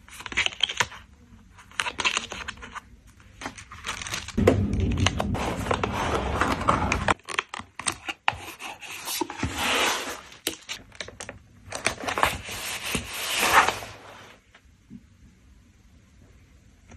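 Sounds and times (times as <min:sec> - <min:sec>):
plastic packaging crinkling: 0:01.6 - 0:04.4.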